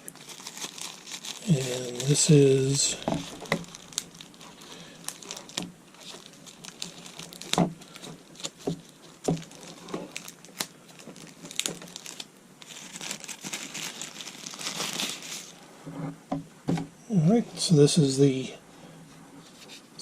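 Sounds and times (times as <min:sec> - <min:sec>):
plastic wrap crinkling: 0:00.0 - 0:15.7.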